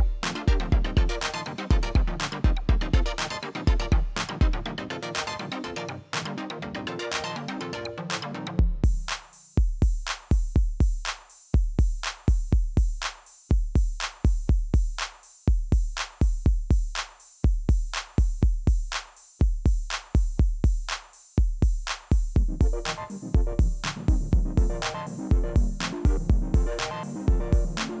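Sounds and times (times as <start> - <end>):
electronic music with drum-machine beat: 0.0 - 28.0
synth melody: 22.4 - 28.0.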